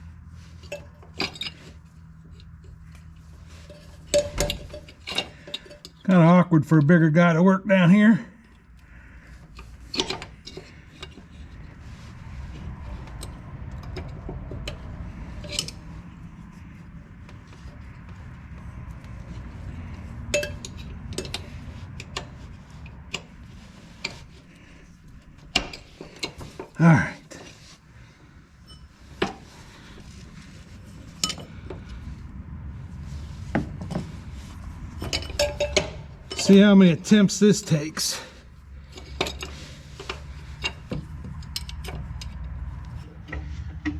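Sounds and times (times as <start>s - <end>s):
steady low rumble: 0.0s - 43.9s
metal tools clinking: 0.6s - 6.2s, 9.5s - 11.6s, 19.3s - 27.6s, 28.6s - 30.1s, 31.0s - 31.7s, 35.0s - 43.9s.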